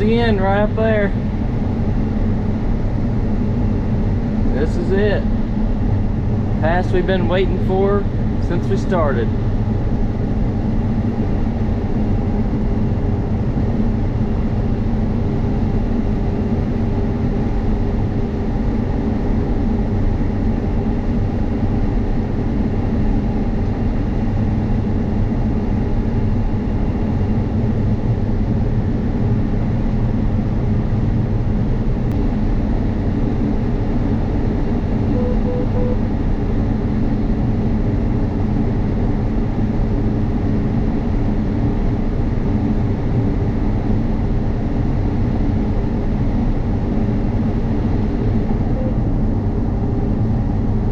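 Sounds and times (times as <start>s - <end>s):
short beeps: 35.1s - 36.1s, 48.5s - 49.1s.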